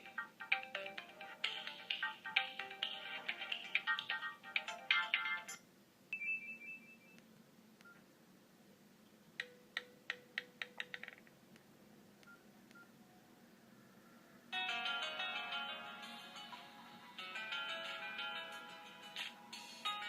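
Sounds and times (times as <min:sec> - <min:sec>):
phone ringtone: 0:14.6 - 0:20.0.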